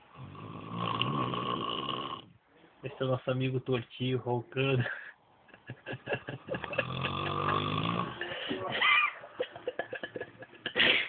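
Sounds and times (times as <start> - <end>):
man snoring: 0.1 - 2.3, 6.6 - 8.3
quiet breathing: 4.8 - 5.3, 8.0 - 8.7.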